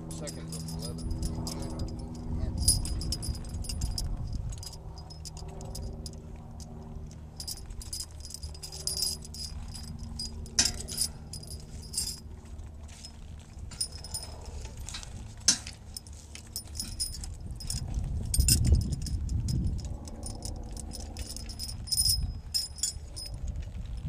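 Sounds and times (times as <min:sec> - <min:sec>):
harness hardware jingling: 0:00.0 - 0:24.0
low steady hum: 0:00.0 - 0:24.0.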